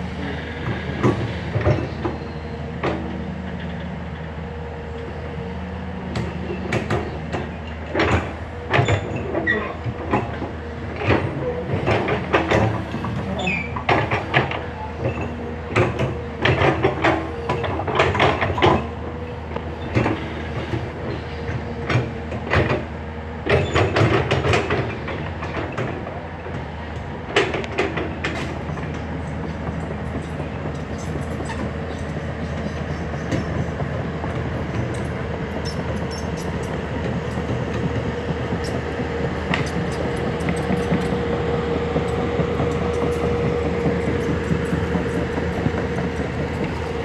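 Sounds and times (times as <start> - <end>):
excavator engine and hydraulic drone: 0.0 - 47.0
metal tracks clanking and squealing: 0.0 - 47.0.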